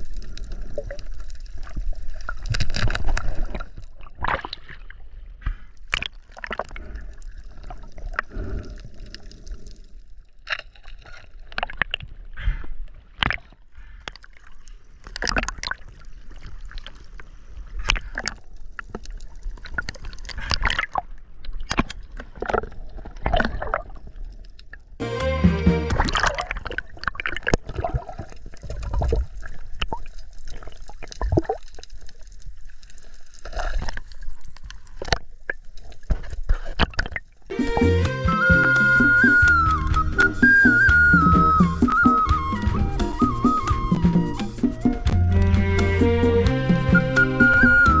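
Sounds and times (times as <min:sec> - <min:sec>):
water sloshing and gurgling: 0:00.0 - 0:25.0, 0:25.9 - 0:37.8, 0:38.4 - 0:45.2
short buzzy sound: 0:25.0 - 0:26.1.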